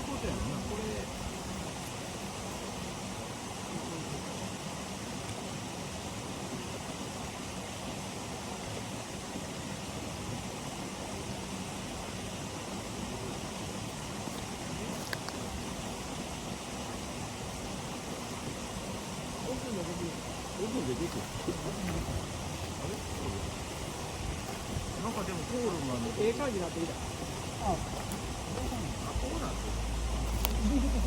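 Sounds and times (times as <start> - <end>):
steady rushing noise: 12.6 - 31.0.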